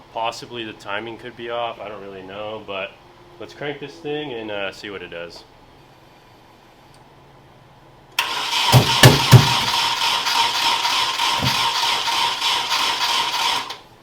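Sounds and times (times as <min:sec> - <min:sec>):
engine cranking by starter: 0:08.2 - 0:13.9.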